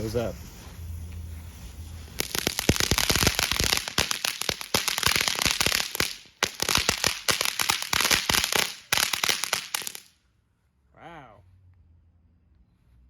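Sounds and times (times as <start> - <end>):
ground firework crackling: 0.0 - 10.2.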